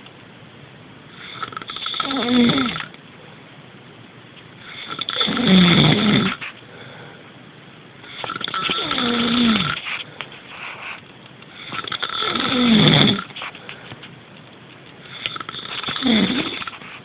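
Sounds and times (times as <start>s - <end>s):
person snoring: 1.2s - 2.9s, 4.7s - 6.4s, 8.0s - 9.8s, 11.6s - 13.4s, 15.1s - 16.8s.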